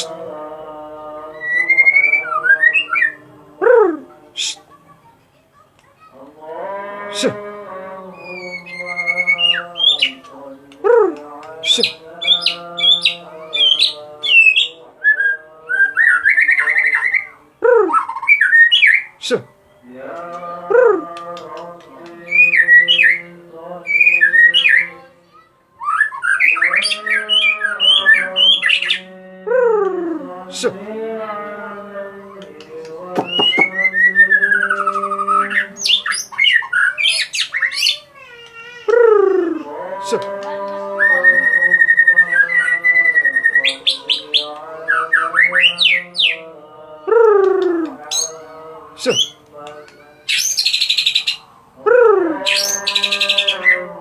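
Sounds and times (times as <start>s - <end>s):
songbird singing: 0.0s - 4.6s, 6.1s - 54.0s
wavering bird calls: 1.1s - 4.7s, 6.2s - 54.0s
bird singing whistled notes: 17.9s - 19.2s, 50.3s - 51.4s.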